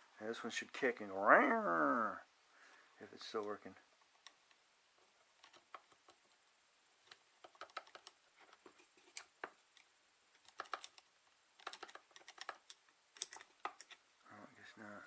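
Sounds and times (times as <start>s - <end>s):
metal clips tapping: 11.6s - 14.0s.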